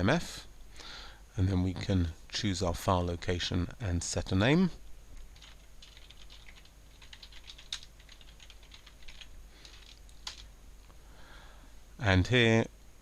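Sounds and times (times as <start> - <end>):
computer keyboard typing: 5.3 - 10.5.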